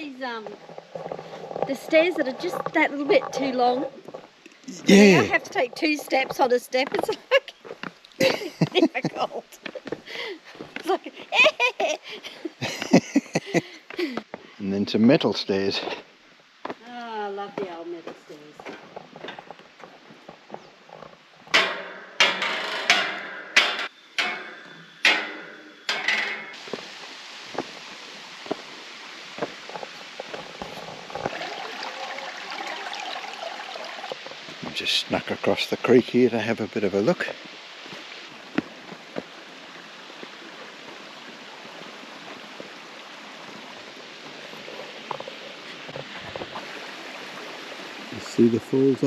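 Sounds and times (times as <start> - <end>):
creek water running over rocks: 0.0 - 49.0
footsteps on metal stairs: 18.6 - 27.8.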